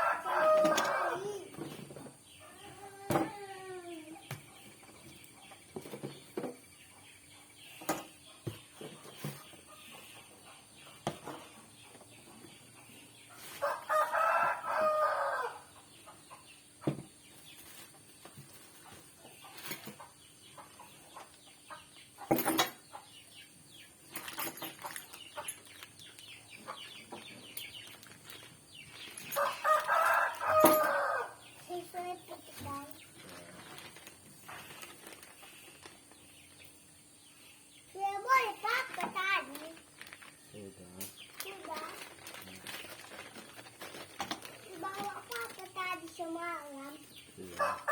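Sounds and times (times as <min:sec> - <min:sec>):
rooster crowing: 0:00.0 - 0:01.3, 0:13.6 - 0:15.6, 0:29.4 - 0:31.4, 0:47.6 - 0:47.9.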